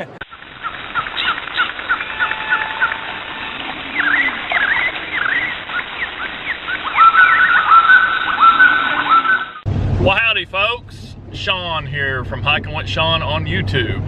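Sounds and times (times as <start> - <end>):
birds chirping: 0.0 - 9.6.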